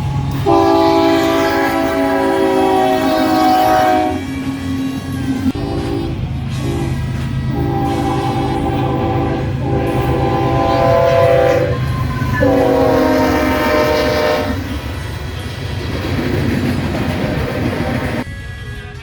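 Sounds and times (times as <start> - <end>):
train horn blasts: 0.0 - 4.6, 5.5 - 14.8
train running on rails: 0.0 - 19.0.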